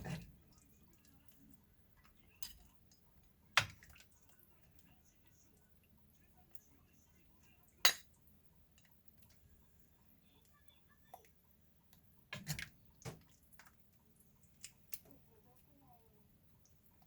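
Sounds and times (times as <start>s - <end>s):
tableware clinking on dishes: 7.8s - 8.1s.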